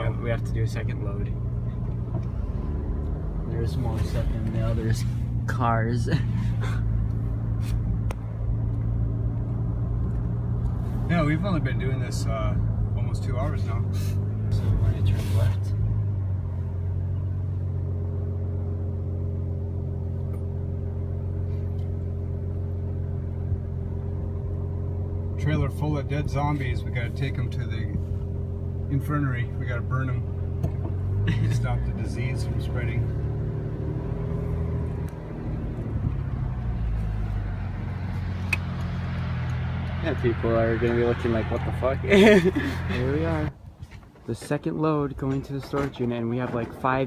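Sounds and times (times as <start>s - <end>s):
car engine drone: 0.0s - 47.0s
road noise: 0.0s - 47.0s.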